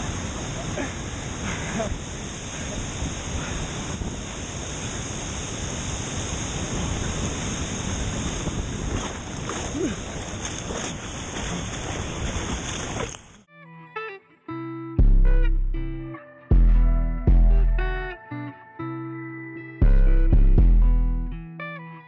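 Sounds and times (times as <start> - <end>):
large waterfall rushing: 0.0 - 8.8.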